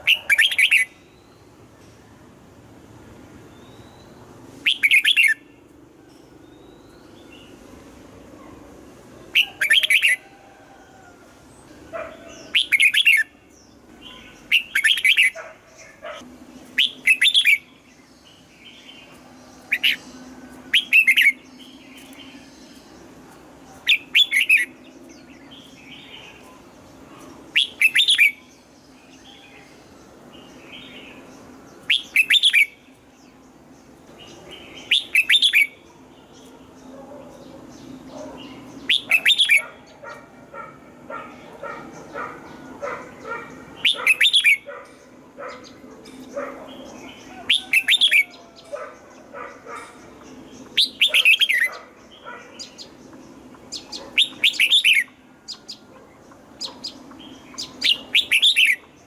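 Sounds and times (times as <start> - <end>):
bird singing whistled phrases: 3.6 - 5.4, 27.6 - 28.4, 31.9 - 32.7, 57.6 - 58.8.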